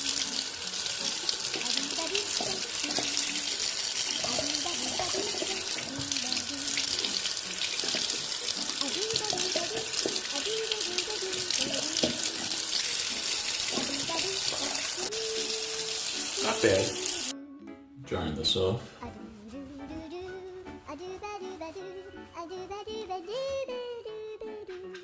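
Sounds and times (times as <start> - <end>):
tap running: 0.0 - 17.3
water splashing: 0.0 - 17.3.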